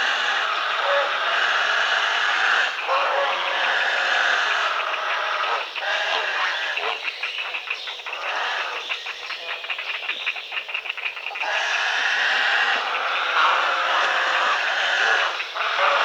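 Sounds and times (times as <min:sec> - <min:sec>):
herons calling harshly: 0:00.0 - 0:16.0
rapid clicking chatter: 0:07.0 - 0:11.4.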